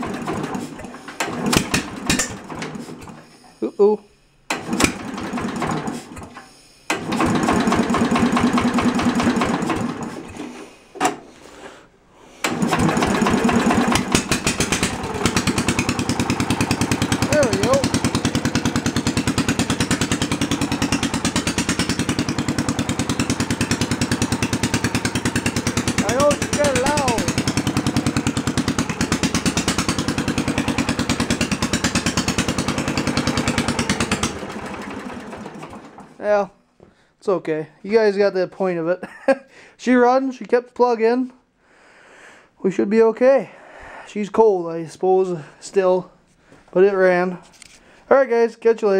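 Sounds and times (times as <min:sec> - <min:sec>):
electric starter cranking engine: 0:00.0 - 0:03.6, 0:04.5 - 0:11.3, 0:12.4 - 0:36.2.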